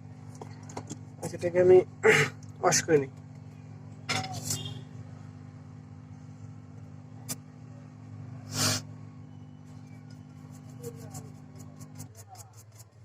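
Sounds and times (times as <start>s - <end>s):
low electrical hum: 0.0s - 13.0s
hissing rubbing burst: 8.5s - 8.9s.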